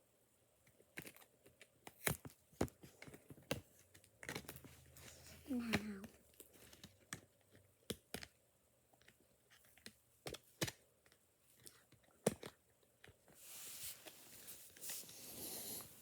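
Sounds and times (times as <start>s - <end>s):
packaging clicks and taps: 0.6s - 4.9s, 5.6s - 8.4s, 9.0s - 13.2s.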